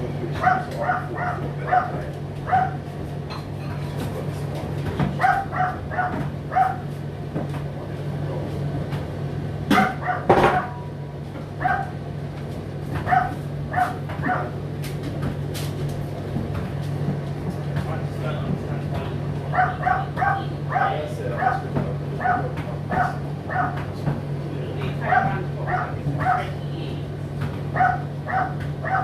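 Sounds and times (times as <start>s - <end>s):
tumble dryer humming: 0.0s - 3.3s, 3.9s - 29.0s
dog barking high yaps: 0.4s - 2.8s, 5.2s - 6.9s, 9.7s - 10.8s, 11.6s - 12.0s, 13.0s - 14.5s, 19.5s - 21.6s, 22.2s - 23.8s, 25.1s - 26.6s, 27.8s - 29.0s.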